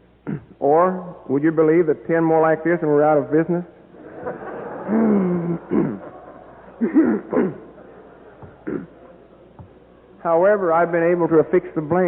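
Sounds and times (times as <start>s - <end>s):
audience laughing: 3.9s - 10.2s.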